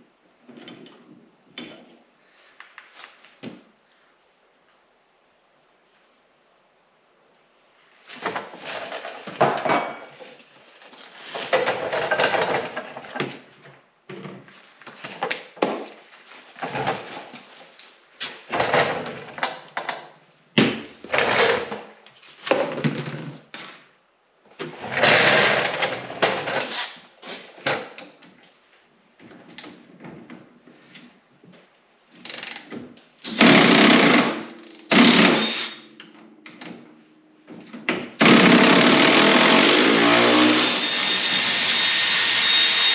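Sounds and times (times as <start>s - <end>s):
power tool bursts: 26.6s - 27.0s, 33.3s - 35.9s, 38.2s - 42.9s.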